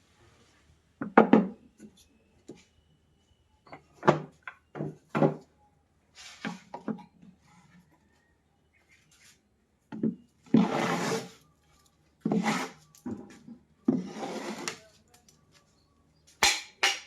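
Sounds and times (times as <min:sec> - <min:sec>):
wood scraping: 0:10.4 - 0:11.4, 0:12.2 - 0:15.0.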